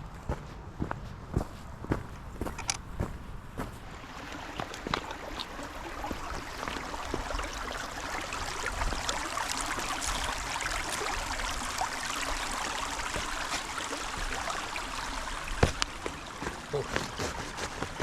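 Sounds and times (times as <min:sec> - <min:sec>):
faint footsteps: 0:00.0 - 0:07.2, 0:15.6 - 0:18.0
creek water flowing: 0:01.6 - 0:18.0.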